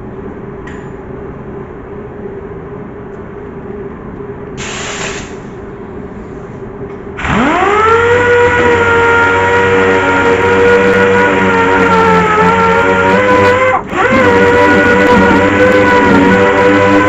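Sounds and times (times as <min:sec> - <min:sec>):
brief hiss: 0:04.6 - 0:05.6
grinder whining: 0:07.2 - 0:17.0.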